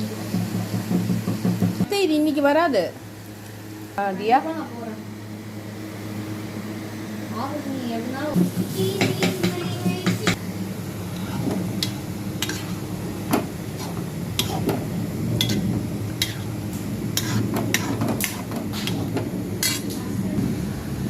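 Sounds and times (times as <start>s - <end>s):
low hum: 9.6s - 21.0s
metal utensil scraping a pan: 11.1s - 12.9s, 13.7s - 14.8s, 15.4s - 16.5s, 17.1s - 20.0s.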